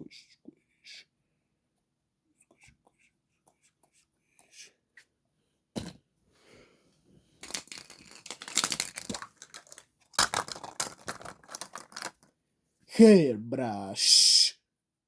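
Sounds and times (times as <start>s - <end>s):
wrapper crinkling and tearing: 7.4s - 12.3s.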